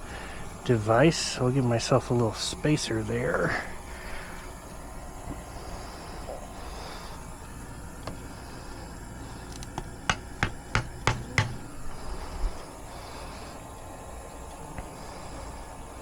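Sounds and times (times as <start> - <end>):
hammer knocking wooden stake: 10.1 - 11.7.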